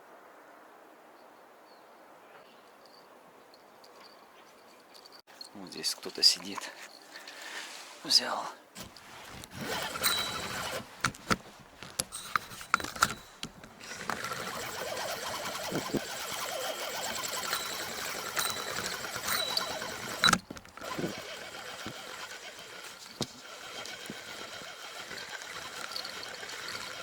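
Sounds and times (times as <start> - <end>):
reel clicks and knocks: 8.8 - 27.0
fishing reel whirring: 9.4 - 27.0.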